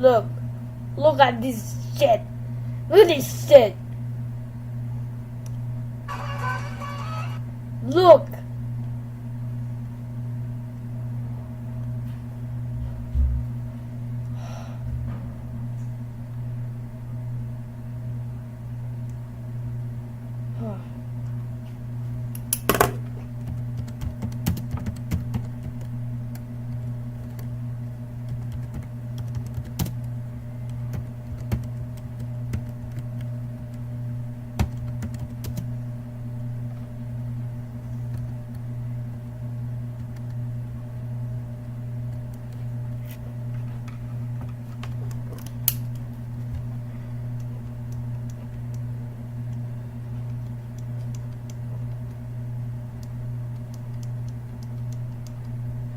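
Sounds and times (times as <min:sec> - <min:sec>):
steady low hum: 0:00.0 - 0:55.9
computer keyboard typing: 0:23.4 - 0:25.9, 0:28.3 - 0:30.1, 0:30.7 - 0:33.3, 0:34.6 - 0:35.7.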